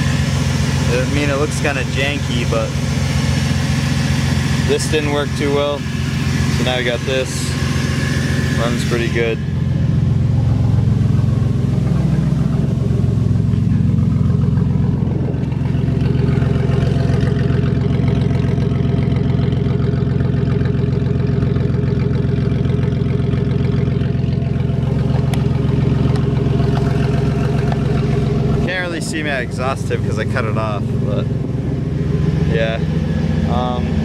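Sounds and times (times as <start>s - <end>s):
van engine idling: 0.0s - 34.0s.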